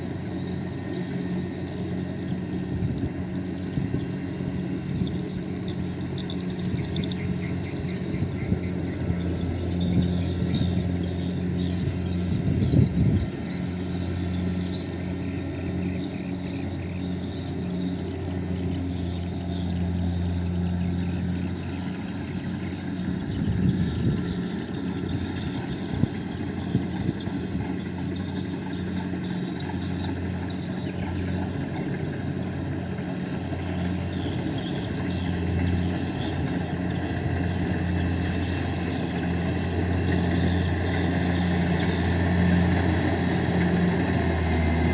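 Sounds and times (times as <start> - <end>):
combine harvester engine running: 0.0 - 44.9.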